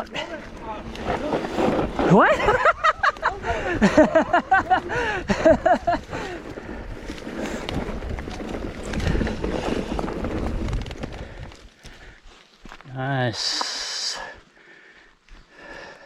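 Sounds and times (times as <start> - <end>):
bike tyres crunching on dirt: 0.0 - 13.0
person laughing: 2.2 - 6.4.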